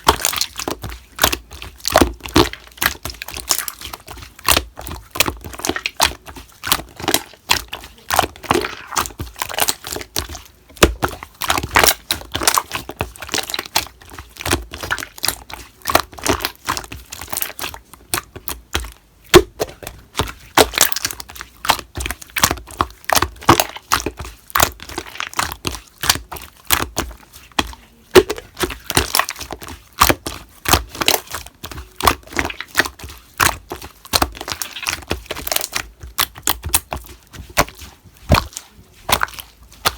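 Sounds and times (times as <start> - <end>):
slime popping and crackling: 0.0 - 39.9.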